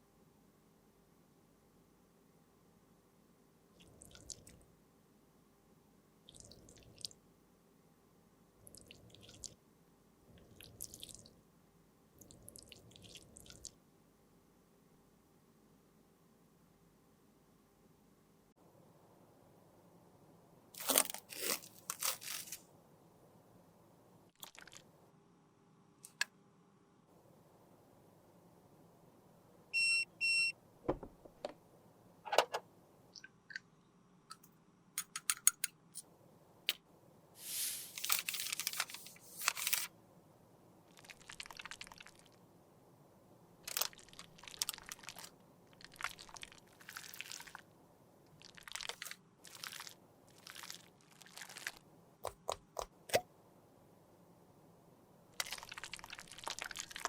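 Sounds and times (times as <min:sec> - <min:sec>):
scraping and crinkling: 0:20.8 - 0:22.6, 0:37.4 - 0:39.9.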